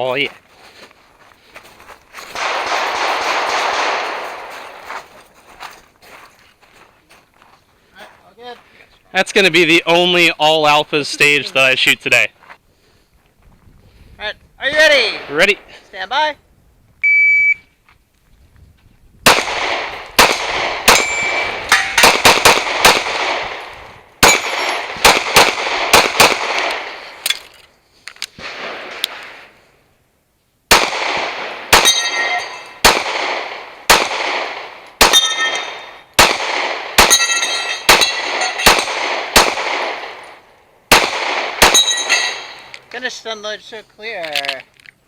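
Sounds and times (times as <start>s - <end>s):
handgun shots: 19.3s - 23.6s, 24.2s - 27.3s, 30.7s - 40.2s, 40.9s - 42.8s
steel targets ringing: 20.9s - 22.2s, 24.2s - 24.9s, 31.8s - 32.8s, 35.0s - 36.1s, 37.0s - 39.0s, 41.6s - 42.8s.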